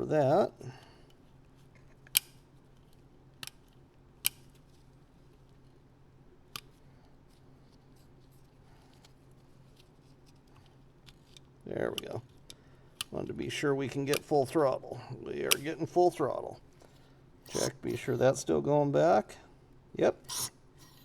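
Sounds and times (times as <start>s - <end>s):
faint steady hum: 0.0s - 21.0s
small parts clicking: 1.8s - 4.7s, 20.2s - 21.0s.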